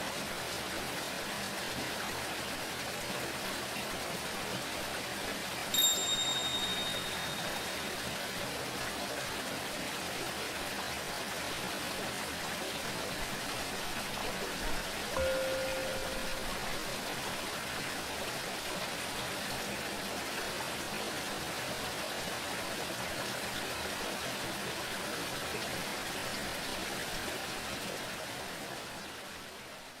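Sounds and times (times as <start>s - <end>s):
flowing water rushing: 0.0s - 30.0s
singing bowl ringing: 5.7s - 8.0s, 15.2s - 17.1s.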